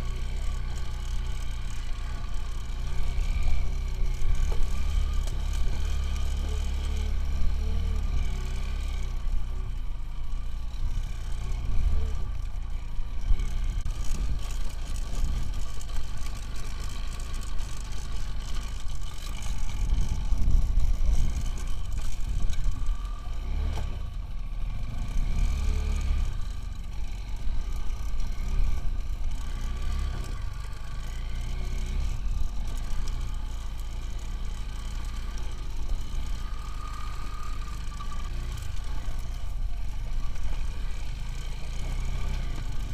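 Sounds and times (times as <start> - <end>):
motorcycle engine rumbling: 0.0 - 42.9.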